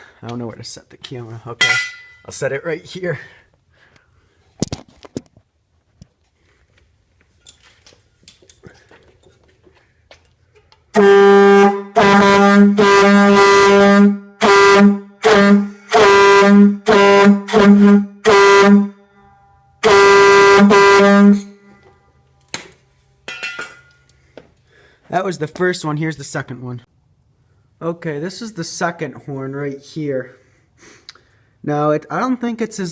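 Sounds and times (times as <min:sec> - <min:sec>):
air horn blasts: 0:10.9 - 0:19.2, 0:19.8 - 0:21.8.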